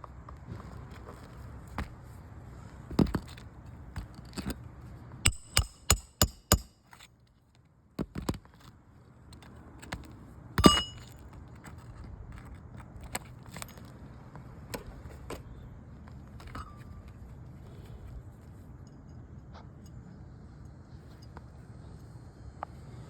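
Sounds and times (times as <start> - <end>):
hammer striking roofing nails: 5.3 - 6.8, 10.6 - 11.1.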